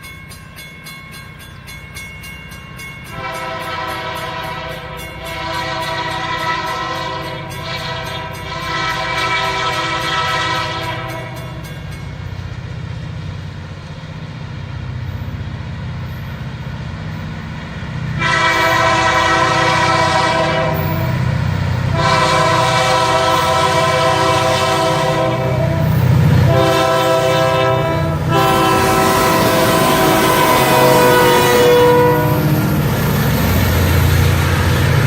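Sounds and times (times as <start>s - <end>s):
diesel locomotives rumbling: 0.0s - 35.0s
locomotive air horn blasts: 3.1s - 11.6s, 18.2s - 21.2s, 21.9s - 32.6s.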